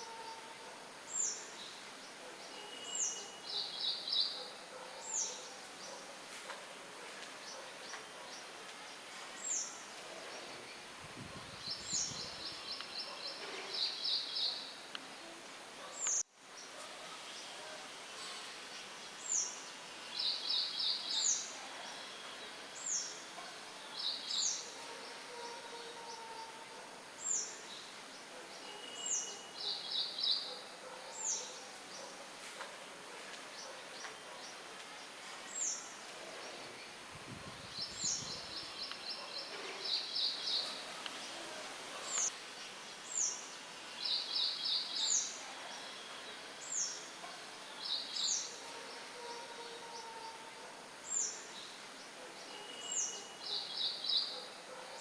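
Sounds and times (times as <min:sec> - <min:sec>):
songbirds calling: 0:07.5 - 0:15.2, 0:33.5 - 0:50.4
faint wind hiss: 0:08.4 - 0:54.8.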